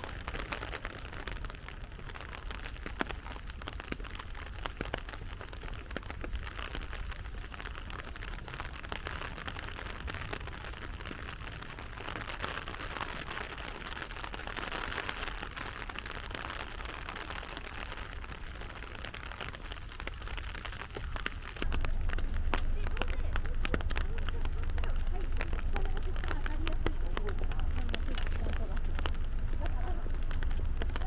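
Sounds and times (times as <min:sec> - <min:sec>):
heavy rain falling: 0:00.0 - 0:31.0
raindrops pattering: 0:00.0 - 0:31.0.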